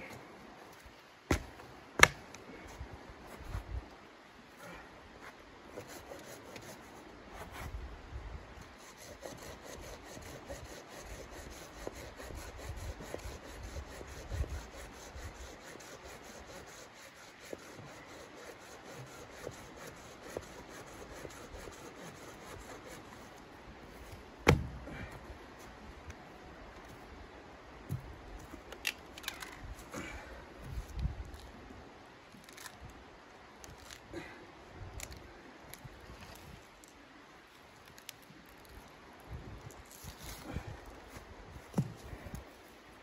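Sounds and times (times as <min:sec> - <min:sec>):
hand saw cutting wood: 0:08.8 - 0:23.3.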